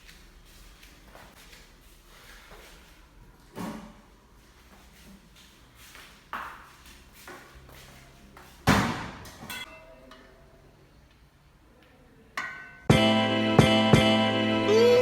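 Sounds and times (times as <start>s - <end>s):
background music: 12.9s - 15.0s.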